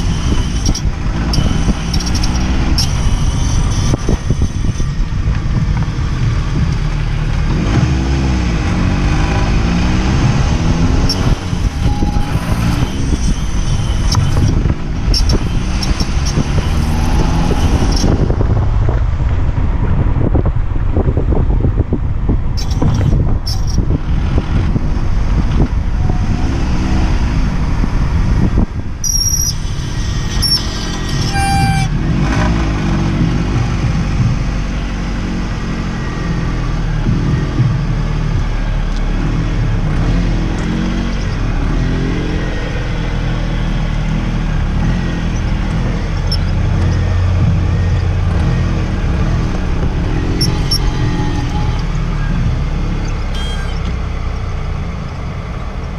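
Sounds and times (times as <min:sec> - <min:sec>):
car engine drone: 0:00.0 - 0:55.9
brief high-pitched tones: 0:30.4 - 0:32.0, 0:53.2 - 0:54.0.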